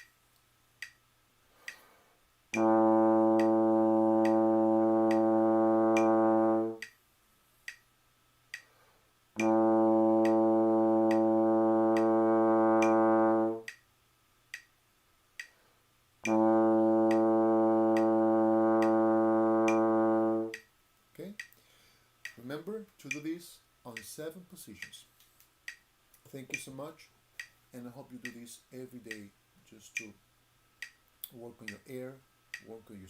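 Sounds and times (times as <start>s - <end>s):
trombone low held tones: 2.5s - 6.8s, 9.4s - 13.7s, 16.2s - 20.6s
metronome ticking: 2.5s - 7.0s, 9.4s - 13.9s, 16.2s - 20.7s, 22.2s - 24.1s, 27.4s - 29.3s, 30.0s - 30.2s, 30.8s - 32.8s.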